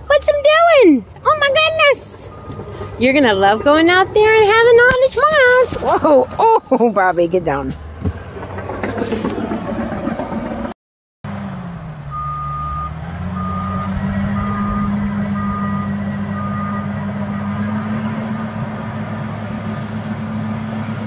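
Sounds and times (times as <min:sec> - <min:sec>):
bulldozer diesel engine: 0:00.0 - 0:21.0
reversing alarm beeping: 0:01.6 - 0:04.8, 0:12.1 - 0:18.6.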